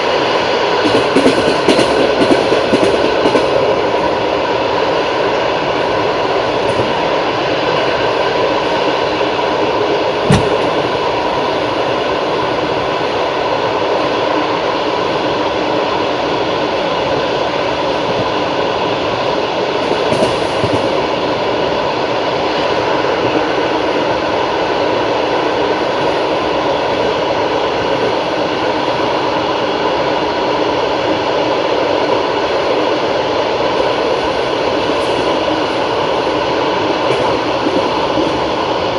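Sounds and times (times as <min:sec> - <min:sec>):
train wheels rumbling on rails: 0:00.0 - 0:38.9
sharp knock: 0:10.3 - 0:11.0.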